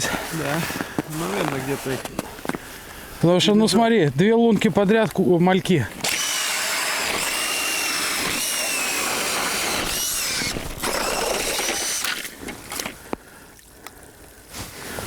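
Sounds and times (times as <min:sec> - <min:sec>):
cordless drill whining: 0:06.0 - 0:12.2.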